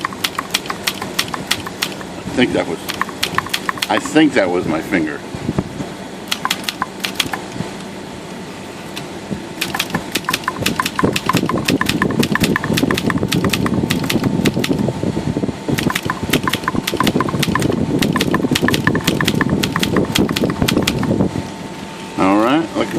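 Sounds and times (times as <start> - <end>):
manual typewriter keystrokes: 0.0 - 2.0, 2.9 - 4.1, 6.3 - 7.4, 9.6 - 14.8, 15.8 - 21.1.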